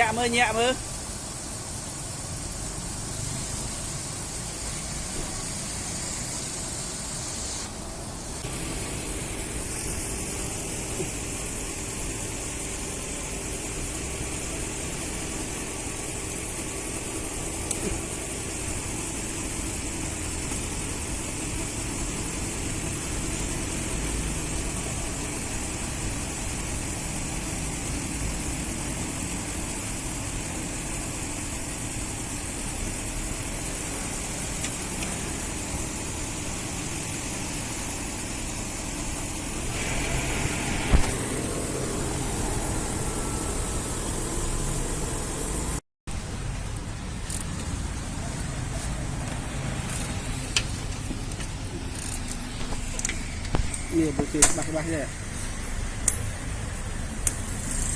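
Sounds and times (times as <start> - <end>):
car engine idling: 0.0 - 45.8.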